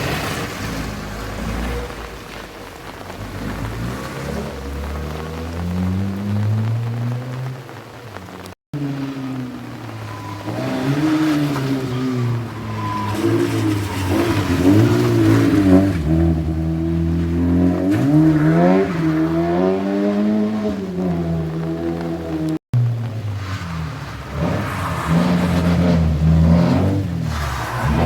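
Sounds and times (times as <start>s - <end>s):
car engine revving hard: 3.2s - 8.2s, 24.3s - 28.0s.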